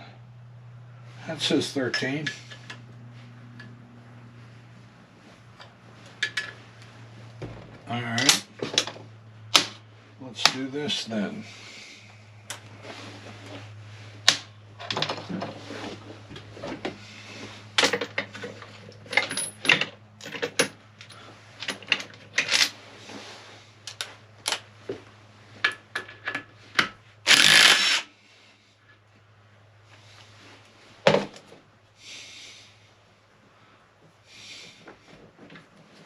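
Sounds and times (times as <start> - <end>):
low hum: 0.0 - 21.5
rasping burst: 27.3 - 28.1.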